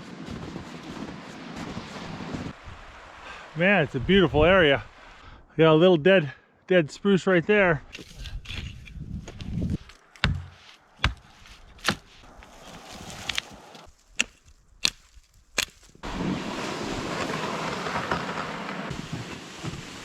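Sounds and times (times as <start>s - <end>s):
axe chopping wood: 8.0s - 16.1s.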